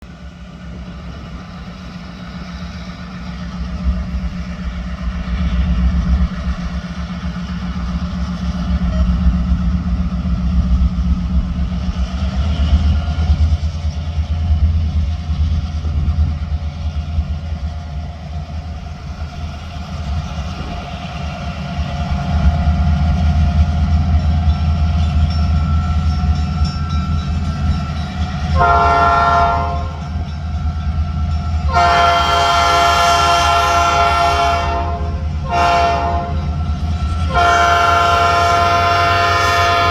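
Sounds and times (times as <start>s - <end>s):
diesel locomotive engine rumble: 0.0s - 39.9s
locomotive air horn: 28.6s - 30.0s, 31.7s - 36.6s, 37.2s - 39.9s.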